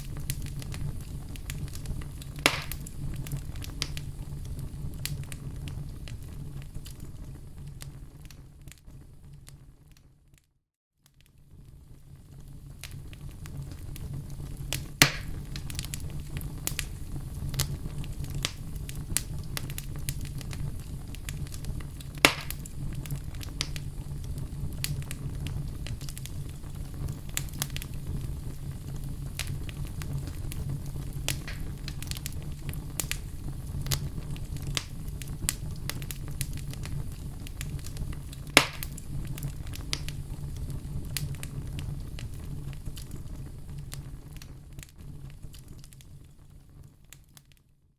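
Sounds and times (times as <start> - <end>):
fireplace fire crackling: 0.0 - 47.9
loud sharp pops: 2.4 - 2.9, 14.8 - 15.4, 22.2 - 22.7, 31.3 - 31.8, 38.6 - 39.0.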